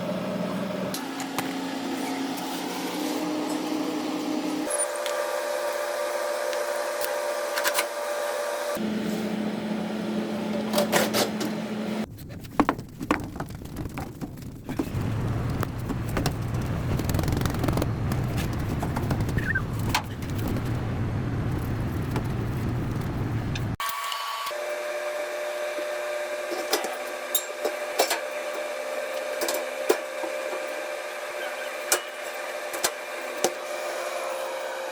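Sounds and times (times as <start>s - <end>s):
fridge compressor humming: 14.2s - 23.8s.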